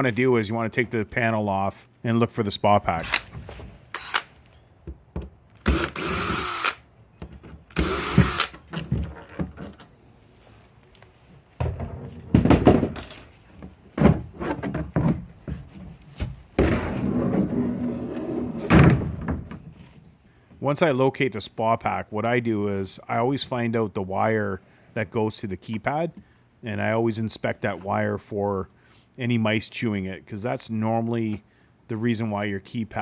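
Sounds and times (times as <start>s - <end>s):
power drill driving out screws: 3.9s - 4.3s, 5.6s - 6.8s, 7.7s - 8.6s
knocks and thuds: 11.6s - 13.1s, 13.9s - 17.0s.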